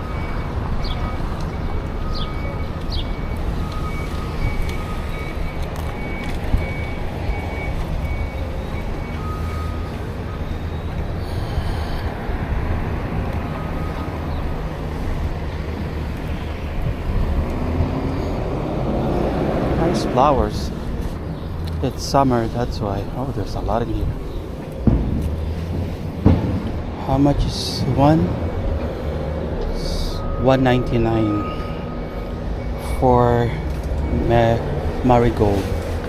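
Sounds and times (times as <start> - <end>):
low rumble of traffic: 0.0 - 36.0
faint high beeping: 29.8 - 35.6.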